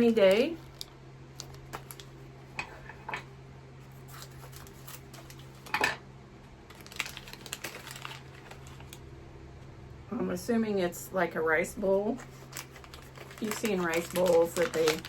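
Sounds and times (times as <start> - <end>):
plastic packaging crinkling: 0.0 - 3.2, 3.8 - 5.8, 6.6 - 9.1, 12.0 - 15.0
steady low hum: 0.0 - 15.0
packaging rustle: 0.1 - 3.0, 3.9 - 5.8, 6.7 - 9.0, 12.0 - 15.0.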